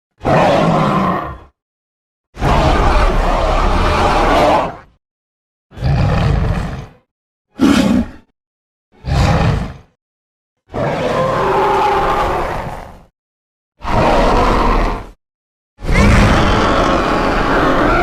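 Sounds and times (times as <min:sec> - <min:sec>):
dinosaur roars: 0:00.2 - 0:01.6, 0:02.4 - 0:04.9, 0:05.7 - 0:08.3, 0:09.0 - 0:10.0, 0:10.7 - 0:13.1, 0:13.8 - 0:15.2, 0:15.8 - 0:18.0.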